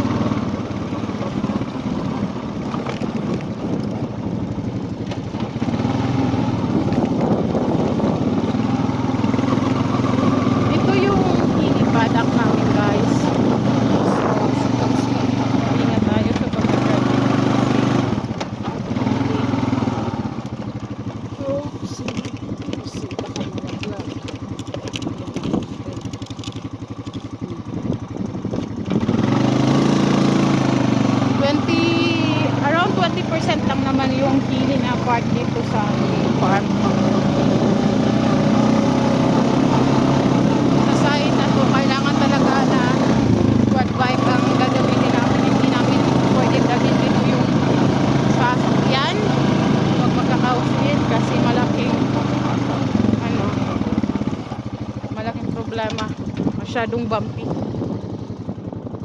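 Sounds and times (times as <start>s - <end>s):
vehicle engine running: 0.0s - 59.0s
rattles and knocks: 21.8s - 28.8s.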